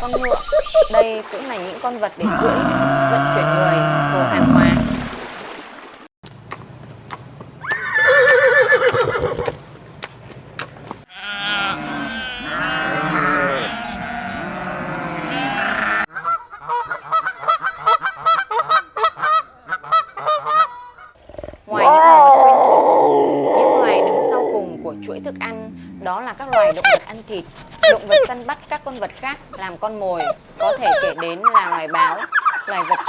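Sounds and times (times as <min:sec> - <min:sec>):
farm animals calling: 0:00.0 - 0:01.0, 0:02.2 - 0:05.2, 0:11.1 - 0:16.1, 0:21.2 - 0:31.2.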